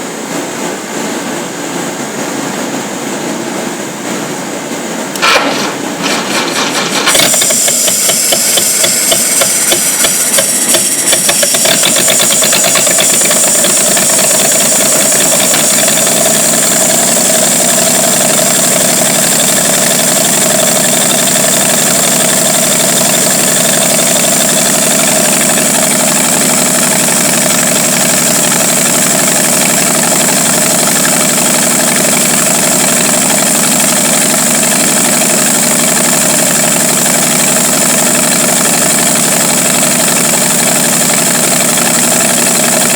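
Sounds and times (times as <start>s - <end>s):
truck engine idling: 5.1s - 42.9s.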